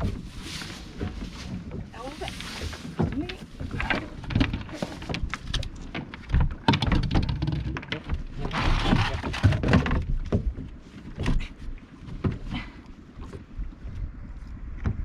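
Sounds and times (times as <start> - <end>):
rustling: 0.0 - 6.4
knocks and thuds on a boat: 0.0 - 15.0.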